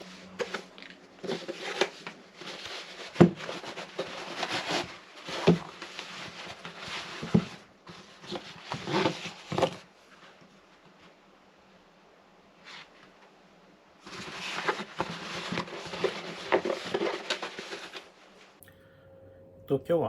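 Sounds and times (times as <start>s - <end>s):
rustling and handling noises: 0.0s - 11.4s, 12.5s - 18.6s
faint steady hum: 9.6s - 20.0s.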